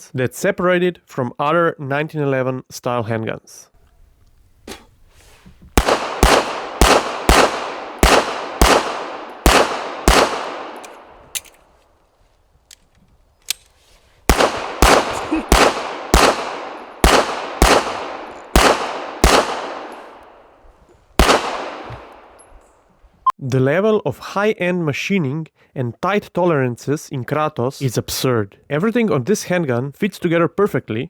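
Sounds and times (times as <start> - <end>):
pistol shots echoing: 5.8 - 11.5, 14.3 - 20.4, 21.2 - 22.4
sharp gun clicks: 5.8 - 11.7, 12.7 - 20.3, 21.2 - 22.4.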